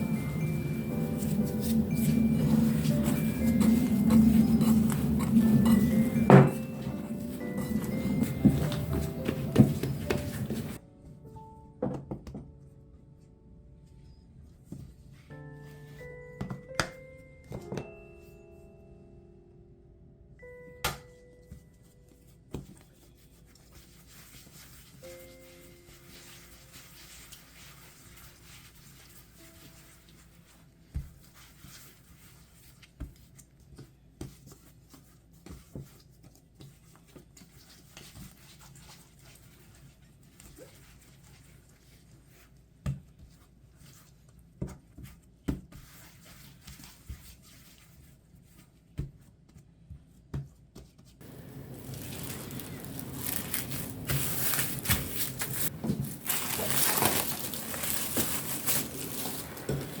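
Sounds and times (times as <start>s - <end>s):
crinkling and rustling: 0.0s - 10.8s, 21.6s - 42.6s, 51.0s - 60.0s.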